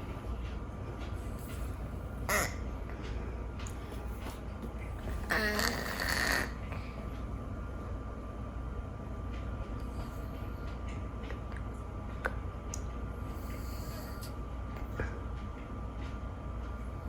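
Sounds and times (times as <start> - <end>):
cat snoring: 5.1 - 6.6.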